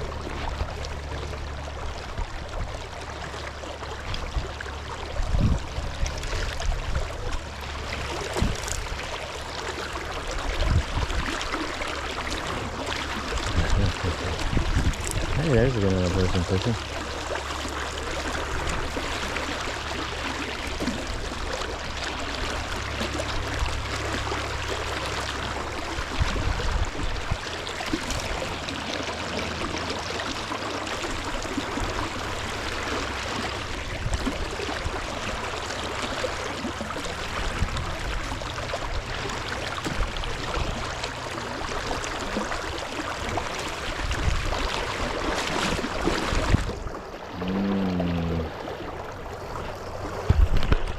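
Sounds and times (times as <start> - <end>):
low rumble: 0.0 - 36.0
river water rushing: 0.0 - 50.9.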